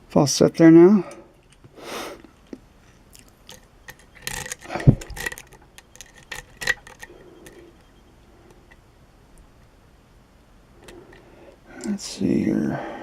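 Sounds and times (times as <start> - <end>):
lock picks clicking and scraping: 2.4 - 8.8.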